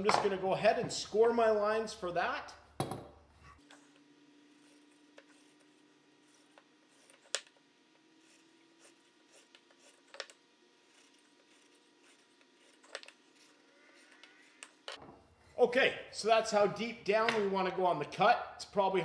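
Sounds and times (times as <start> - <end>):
gauge scratching wood: 4.4 - 14.9.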